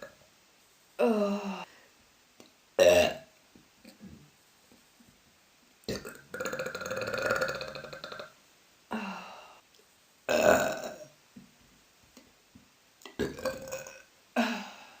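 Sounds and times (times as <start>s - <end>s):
woman burping: 2.8s - 3.3s, 5.9s - 8.3s, 10.3s - 11.1s, 13.1s - 14.8s.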